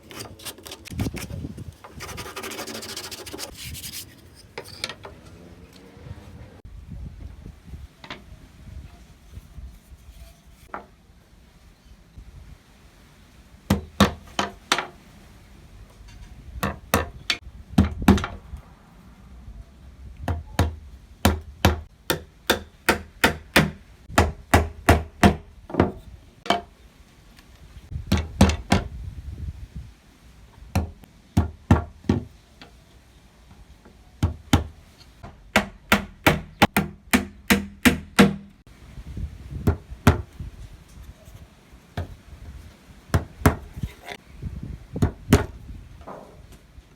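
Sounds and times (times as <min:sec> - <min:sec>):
hammer driving nails into wood: 0:20.6 - 0:25.4, 0:35.5 - 0:38.5.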